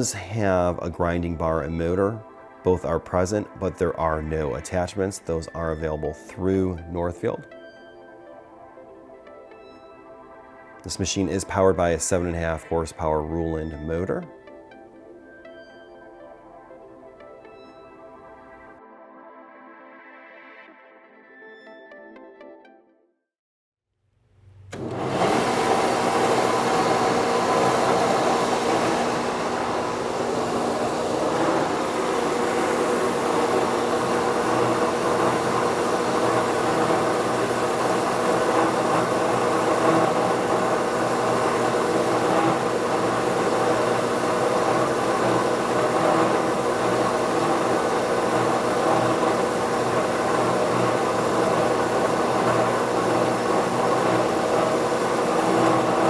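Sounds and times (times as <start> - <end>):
planer machine humming: 24.6 - 56.0.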